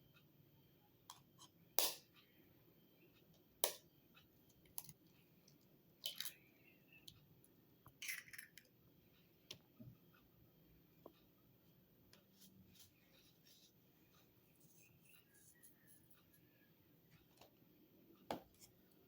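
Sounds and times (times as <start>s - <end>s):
kitchen utensils clicking and scraping: 8.0s - 8.7s.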